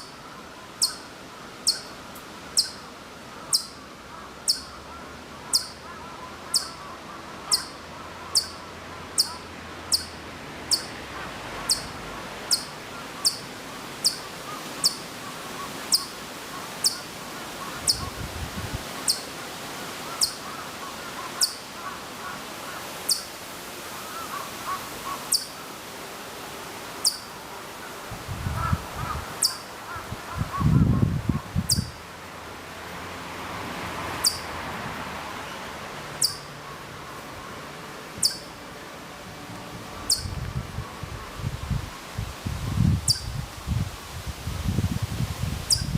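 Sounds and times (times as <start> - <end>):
chipmunk high chip calls: 0.8 - 3.8, 4.4 - 4.8, 5.5 - 11.0, 11.7 - 18.1, 19.0 - 19.3, 20.1 - 22.0, 23.1 - 23.3, 25.0 - 25.6, 27.0 - 27.3, 29.0 - 29.7, 31.6 - 32.0, 34.2 - 34.5, 36.2 - 36.5, 38.2 - 38.6, 40.0 - 40.4, 43.0 - 43.4, 45.7 - 45.9
faint bird chatter: 5.5 - 8.6.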